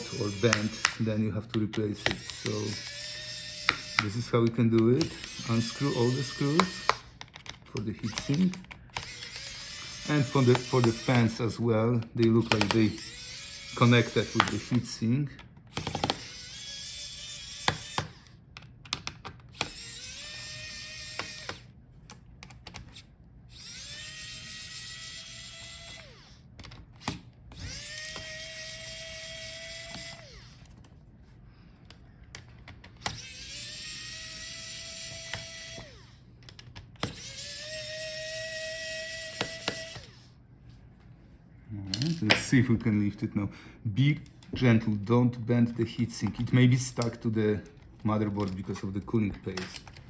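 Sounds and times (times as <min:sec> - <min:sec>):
small clicks of screws: 0:00.0 - 0:11.4, 0:12.4 - 0:14.8, 0:15.4 - 0:31.0, 0:31.8 - 0:40.2, 0:49.5 - 0:50.0
electric screwdriver whining: 0:00.0 - 0:11.6, 0:12.2 - 0:21.8, 0:22.6 - 0:30.9, 0:32.4 - 0:40.4, 0:47.8 - 0:50.0.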